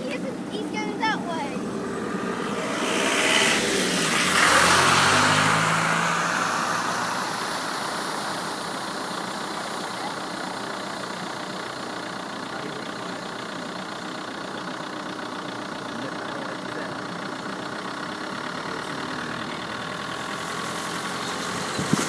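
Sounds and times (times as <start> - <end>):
steady rushing noise: 0.0 - 11.6
car driving through water: 1.7 - 14.0.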